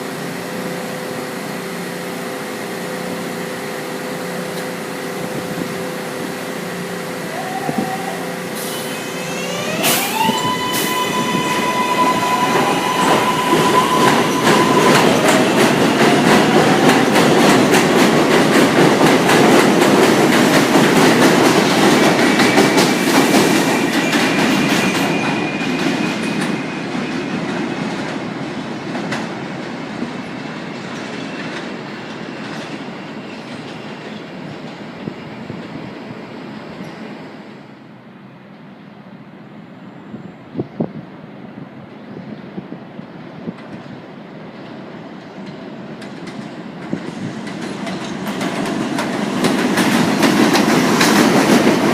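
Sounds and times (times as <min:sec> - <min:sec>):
subway train motors whining: 0:00.0 - 0:51.9
train wheels clattering over rail joints: 0:12.4 - 0:28.2, 0:45.2 - 0:51.9.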